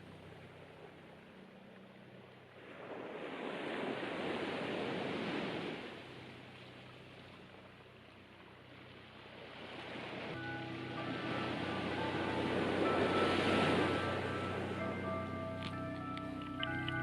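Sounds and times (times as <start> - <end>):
sea waves washing on shore: 0.0 - 17.0.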